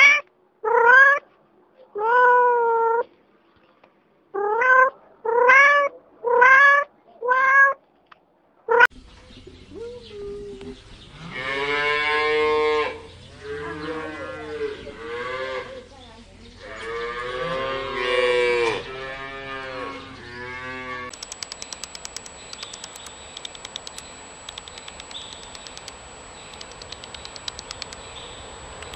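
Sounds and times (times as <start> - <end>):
cattle mooing: 16.6 - 21.1
rapid faint clicks: 21.1 - 28.9
steady high whine: 21.1 - 28.9.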